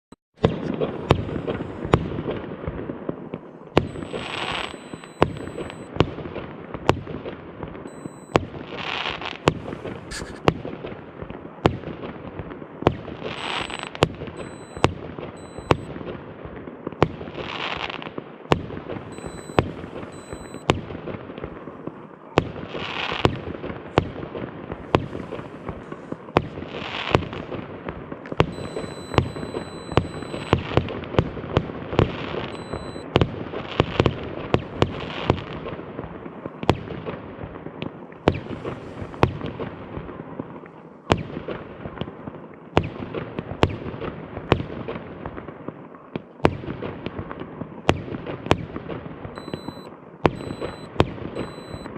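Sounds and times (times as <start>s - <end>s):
firework bangs: 0.4s - 45.6s
firework crackling: 3.8s - 5.9s, 8.0s - 10.8s, 13.2s - 14.9s, 22.7s - 31.2s
firework hissing burst: 9.6s - 10.5s.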